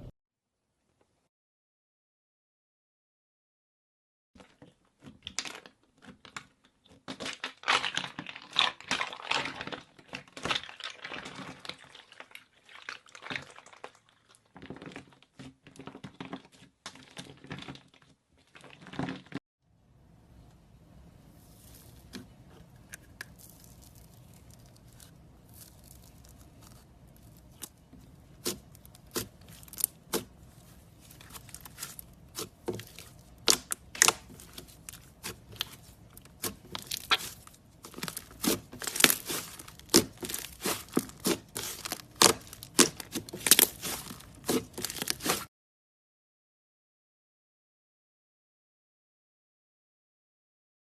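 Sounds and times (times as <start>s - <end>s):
slime crackling and popping: 22.8s - 45.5s.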